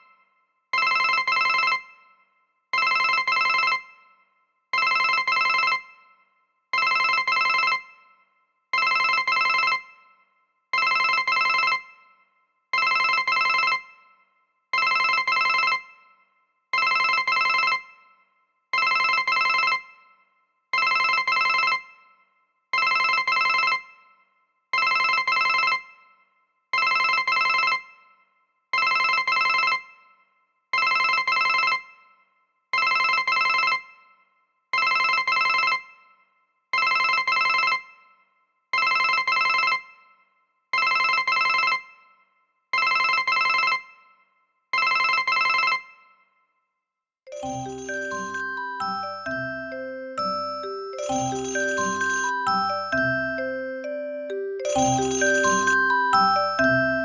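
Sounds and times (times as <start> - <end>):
phone ringtone double ring: 47.3 - 57.0.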